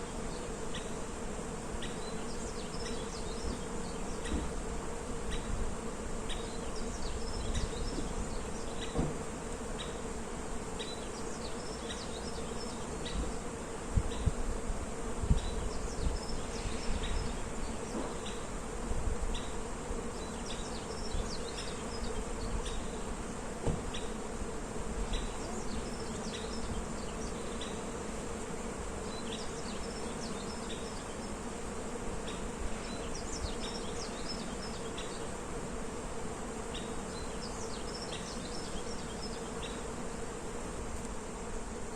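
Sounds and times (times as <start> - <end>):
bees buzzing: 0.0 - 41.9
wind rumble on microphone: 13.9 - 17.4.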